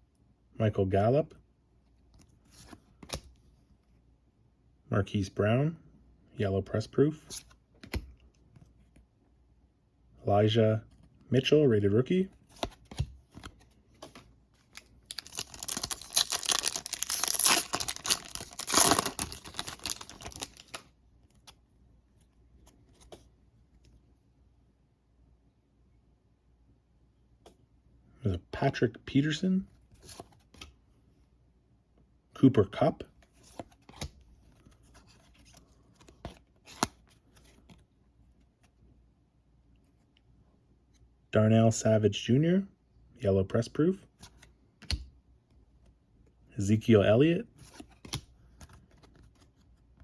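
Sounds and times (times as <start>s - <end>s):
rustling of cards: 12.3s - 21.6s, 33.2s - 38.7s, 46.9s - 50.0s
foil wrapper tearing and crinkling: 15.1s - 20.8s.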